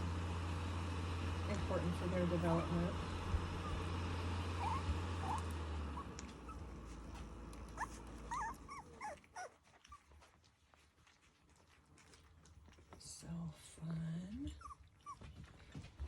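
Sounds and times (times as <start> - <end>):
low steady hum: 0.0 - 16.0
puppies whimpering: 3.0 - 10.1, 14.5 - 15.4.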